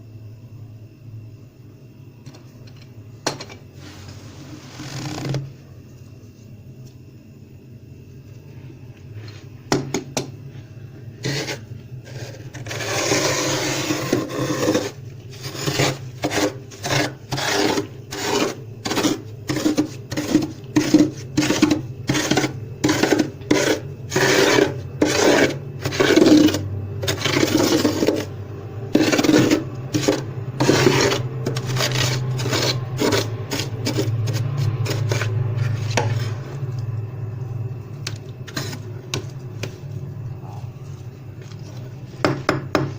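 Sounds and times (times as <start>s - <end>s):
frost scraped off freezer walls: 3.8s - 5.5s, 11.2s - 28.3s, 28.9s - 36.6s, 38.4s - 39.3s.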